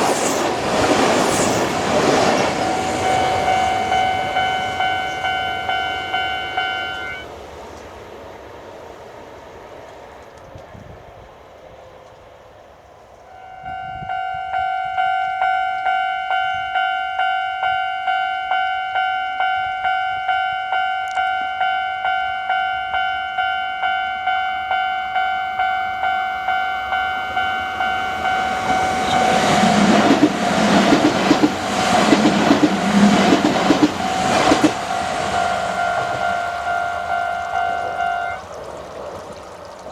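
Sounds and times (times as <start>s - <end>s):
train rumbling past: 0.0s - 39.9s
level crossing bell ringing: 2.6s - 7.2s.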